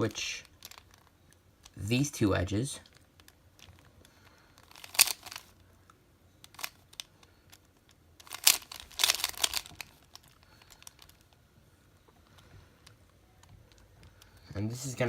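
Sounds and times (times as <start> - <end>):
puzzle cube clicking and scraping: 0.1 - 1.8, 2.8 - 5.6, 6.4 - 11.4.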